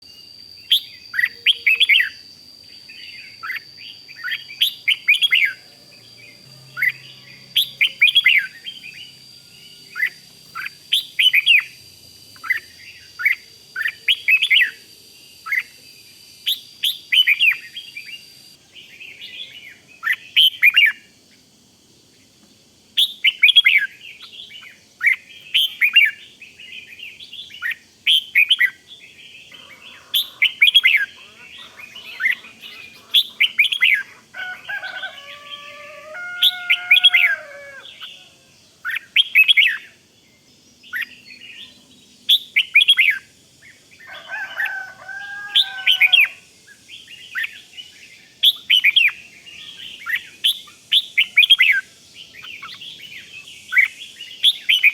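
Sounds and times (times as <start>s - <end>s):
bulbul chattering call: 27.5s - 40.0s.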